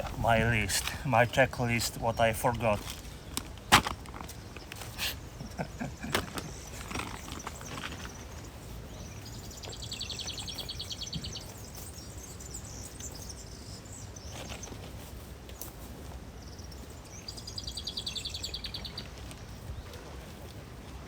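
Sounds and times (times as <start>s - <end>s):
songbird singing with trill: 5.6s - 14.4s, 16.5s - 19.1s.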